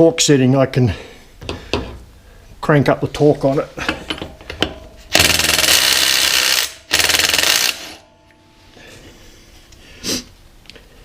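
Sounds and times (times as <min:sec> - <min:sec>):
impact wrench hammering: 0:03.9 - 0:08.1.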